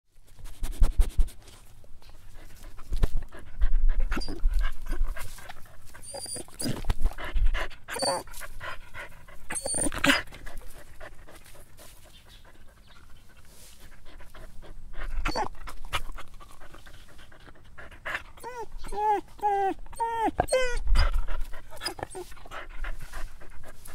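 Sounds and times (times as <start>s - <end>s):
dog panting and snuffling: 0.2s - 23.9s
dog whining: 4.1s - 4.5s, 6.0s - 6.9s, 7.9s - 8.3s, 9.5s - 10.4s, 15.2s - 15.6s, 18.3s - 22.4s.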